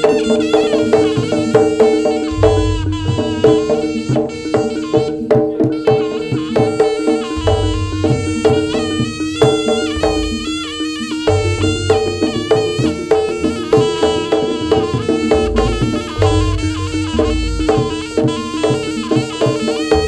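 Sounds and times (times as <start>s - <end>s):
drumming: 0.0s - 20.0s
reed pipe melody: 0.0s - 20.0s
struck metal percussion: 0.0s - 20.0s
held drone: 0.6s - 20.0s
deep low strokes: 2.3s - 3.6s, 7.4s - 12.6s.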